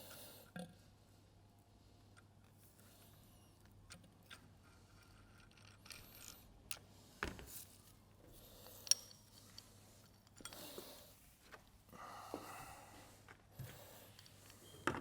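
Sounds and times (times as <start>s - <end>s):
small metal parts clicking: 3.9s - 6.8s, 8.6s - 10.7s.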